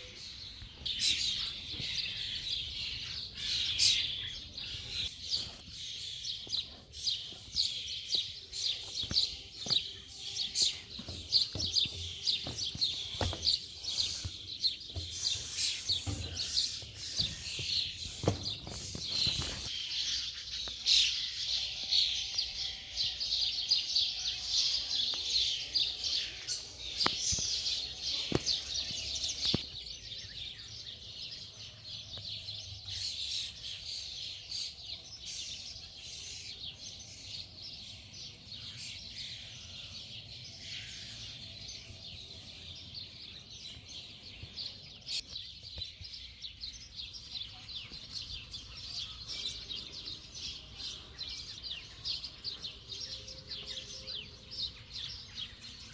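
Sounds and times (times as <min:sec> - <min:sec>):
songbirds chirping and singing: 0:00.0 - 0:55.9.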